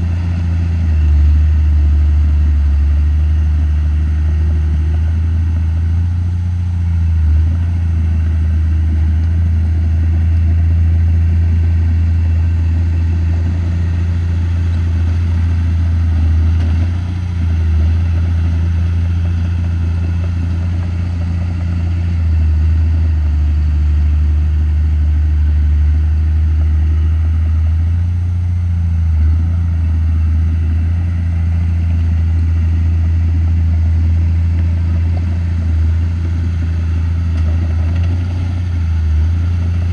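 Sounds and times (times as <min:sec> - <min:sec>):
bulldozer diesel engine droning: 0:00.0 - 0:39.9.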